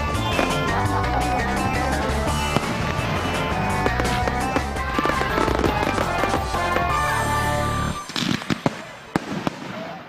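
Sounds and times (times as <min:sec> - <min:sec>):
steady low bass: 0:00.0 - 0:08.0
background music with held notes: 0:00.0 - 0:08.1.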